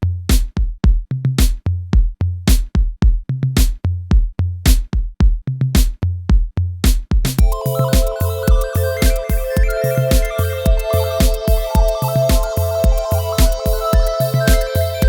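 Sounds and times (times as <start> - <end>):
drum machine beat: 0.0 - 15.0
sustained synth tones: 7.4 - 15.0.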